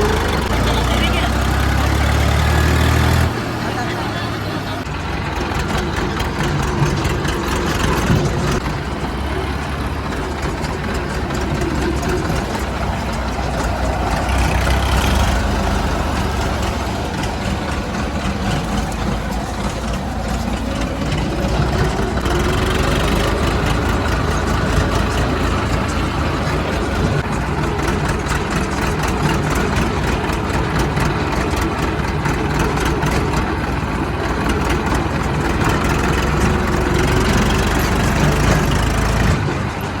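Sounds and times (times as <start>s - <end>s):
heavy diesel engine running: 0.0s - 40.0s.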